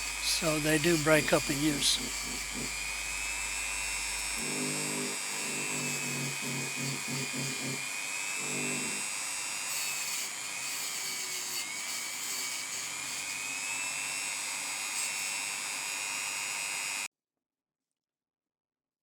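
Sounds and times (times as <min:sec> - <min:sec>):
wire brush scratching metal: 0:00.0 - 0:03.2
rotary tool whine: 0:00.0 - 0:17.1.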